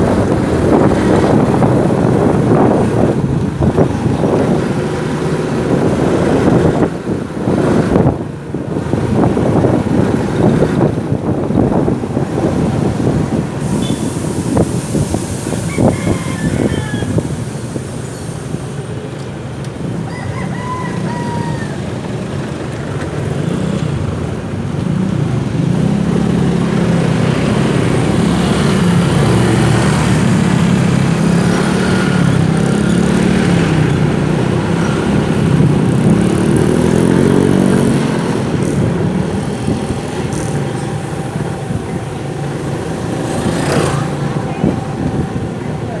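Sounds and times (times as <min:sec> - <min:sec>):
rooster crowing: 0:15.6 - 0:17.3, 0:20.0 - 0:22.1
motorcycle engine revving: 0:24.9 - 0:46.0.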